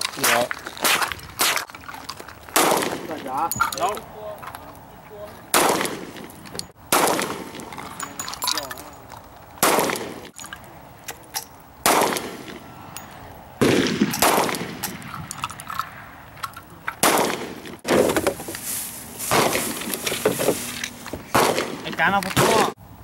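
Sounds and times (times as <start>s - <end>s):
loud gunshots ringing: 2.5s - 3.5s, 5.5s - 6.3s, 6.9s - 7.7s, 9.6s - 10.4s, 11.8s - 12.6s, 13.6s - 15.2s, 17.0s - 18.1s, 19.3s - 19.8s, 21.3s - 22.8s
faint distant gunshots: 2.6s - 3.3s, 5.5s - 6.3s, 6.9s - 7.7s, 9.6s - 10.3s, 11.8s - 12.7s, 13.6s - 15.1s, 17.0s - 18.2s, 19.3s - 19.9s, 21.3s - 22.8s.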